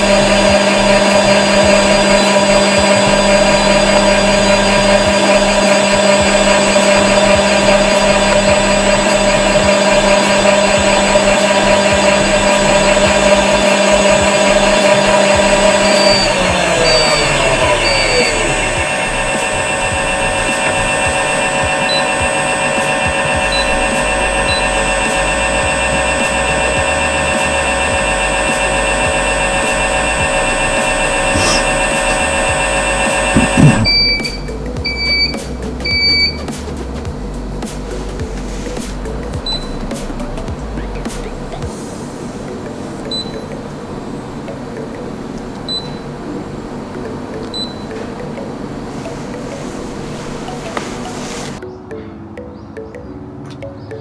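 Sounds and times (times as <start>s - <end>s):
mixer motor whining: 0.0s - 36.5s
steady machine hum: 0.0s - 51.6s
short high-pitched beeps: 33.3s - 36.4s.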